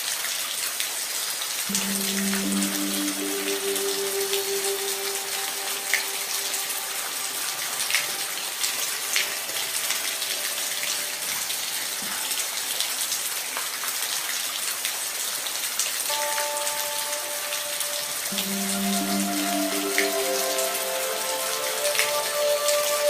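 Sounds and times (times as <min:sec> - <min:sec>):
raindrops ticking on a surface: 0:00.0 - 0:23.0
steady rain hiss: 0:00.0 - 0:23.0
faint held music tones: 0:01.7 - 0:12.1, 0:16.1 - 0:23.0.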